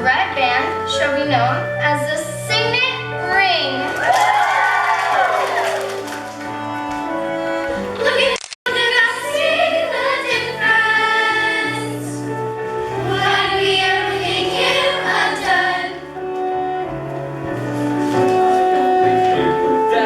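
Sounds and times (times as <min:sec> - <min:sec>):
instrumental accompaniment: 0:00.0 - 0:20.0
chorus singing: 0:07.5 - 0:16.3, 0:17.4 - 0:20.0.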